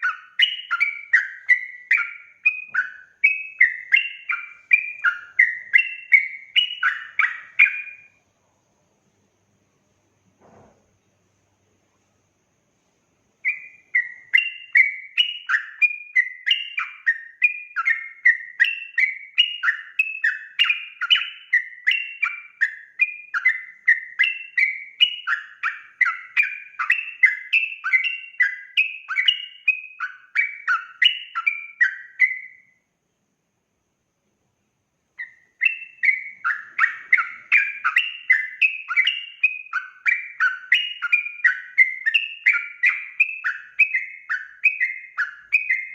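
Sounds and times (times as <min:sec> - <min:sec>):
bulbul singing warbled phrases: 0:00.0 - 0:08.1, 0:35.2 - 0:45.9.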